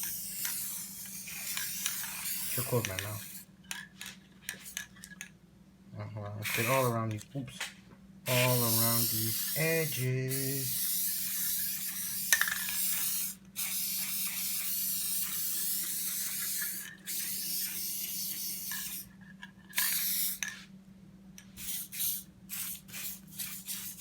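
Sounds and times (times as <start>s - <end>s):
spray paint can hissing: 0.0s - 3.5s, 6.4s - 6.9s, 8.3s - 19.1s, 19.7s - 20.6s, 21.6s - 24.0s.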